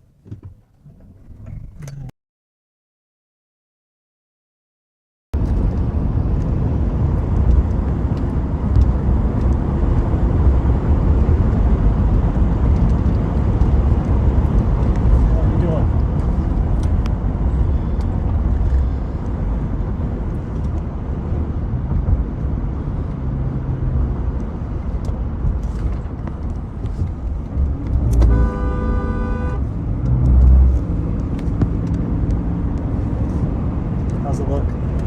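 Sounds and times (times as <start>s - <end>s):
steady low rumble: 5.4s - 35.0s
car horn blast: 28.0s - 29.7s.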